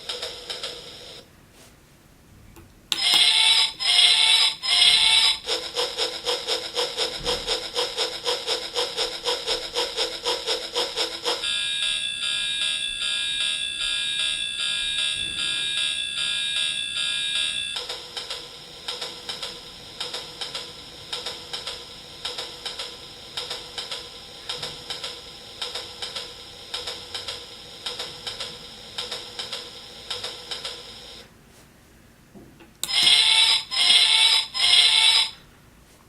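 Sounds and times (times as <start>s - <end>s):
synthesized train toots: 2.9s - 11.5s
warbling alarm-like tone: 3.0s - 5.8s.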